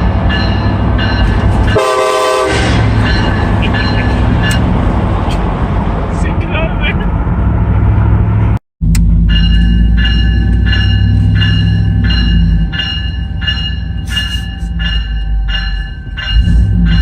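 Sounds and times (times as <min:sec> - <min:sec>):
road noise: 0:00.0 - 0:17.0
electronic bell ringing: 0:09.3 - 0:17.0.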